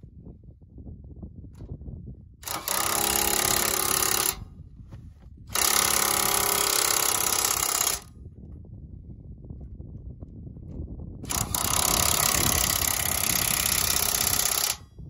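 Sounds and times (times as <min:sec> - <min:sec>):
impact wrench hammering: 0:02.4 - 0:04.4, 0:05.5 - 0:08.1, 0:11.3 - 0:14.8.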